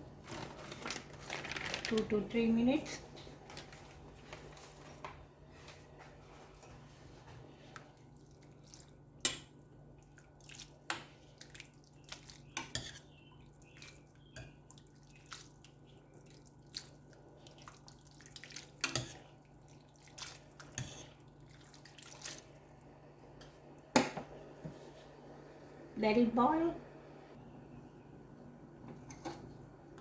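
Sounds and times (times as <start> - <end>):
noodles in boiling water: 0.0 - 24.0
steady low hum: 22.4 - 30.0.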